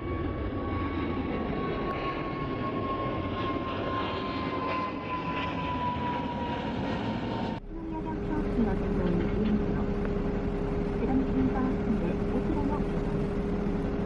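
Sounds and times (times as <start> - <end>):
jet engines whining: 0.0 - 14.0.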